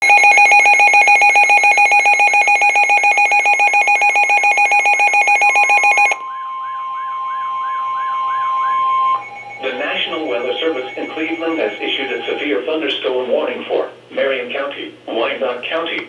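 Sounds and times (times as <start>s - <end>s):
rapid electronic alarm beeping: 0.0s - 13.1s
steady warning tone with warble: 5.2s - 13.8s.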